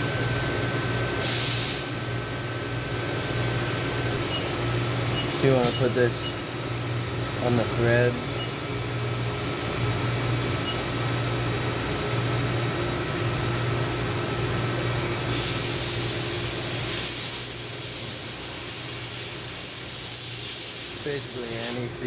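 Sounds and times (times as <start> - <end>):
mechanical hum: 0.0 - 22.0
high hiss: 15.4 - 21.9.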